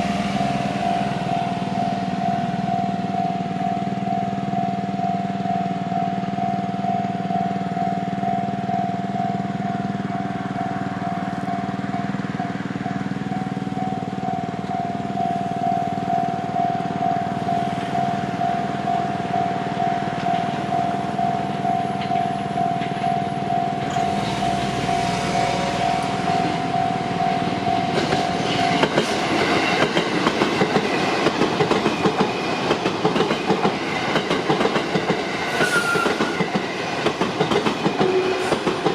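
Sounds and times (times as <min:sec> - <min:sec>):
level-crossing warning bell: 0:00.0 - 0:36.8
train wheels clacking over rail joints: 0:20.0 - 0:38.9.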